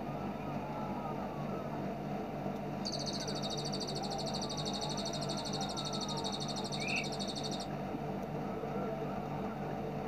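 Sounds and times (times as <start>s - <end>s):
low background hum: 0.0s - 10.0s
songbird rapid high trill: 2.9s - 7.7s.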